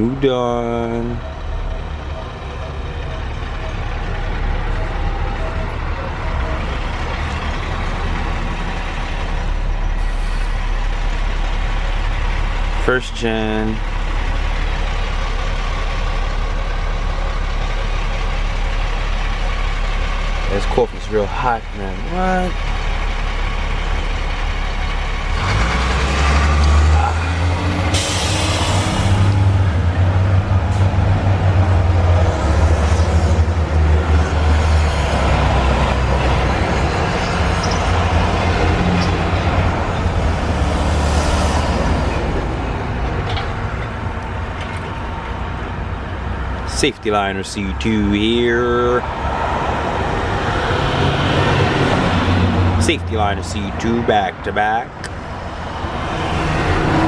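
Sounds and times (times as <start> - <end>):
bus driving past: 0.0 - 12.8, 22.5 - 46.8, 47.5 - 57.0
air brake hiss: 27.9 - 29.0.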